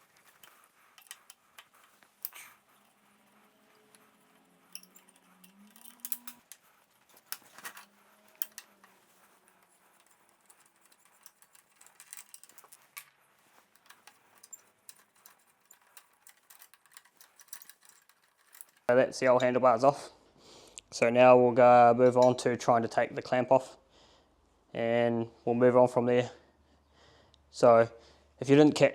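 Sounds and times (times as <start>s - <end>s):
metallic clicks and rattles of tools: 0.0s - 18.9s.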